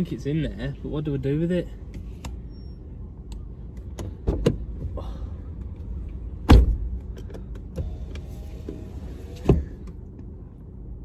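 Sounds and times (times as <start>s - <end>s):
knocks and clunks in car: 3.9s - 5.0s, 6.4s - 10.3s
heavy thump: 6.4s - 7.0s.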